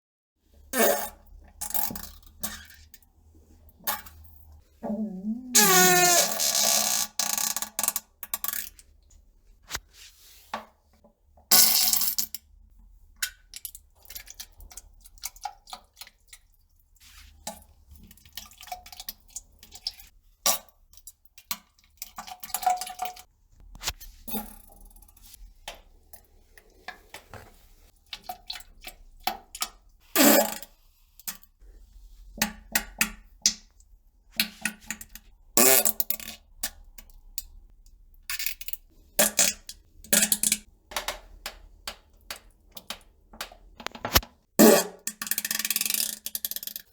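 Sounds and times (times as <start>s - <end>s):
fart: 5.4s - 7.5s
small clicks and taps: 40.3s - 44.4s.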